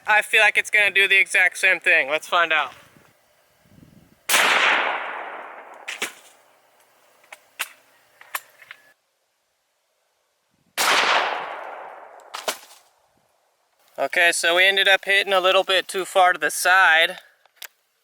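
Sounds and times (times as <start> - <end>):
rifle shot echoing: 4.3 - 6.3, 10.8 - 12.6.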